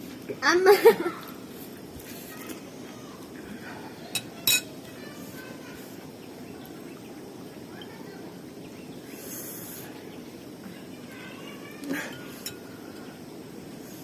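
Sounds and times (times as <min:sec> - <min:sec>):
utensil clinking on plate: 0:04.1 - 0:04.7.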